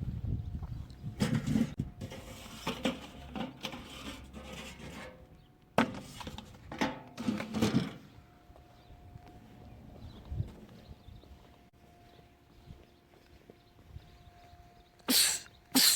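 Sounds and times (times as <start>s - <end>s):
man sneezing: 15.1s - 15.9s.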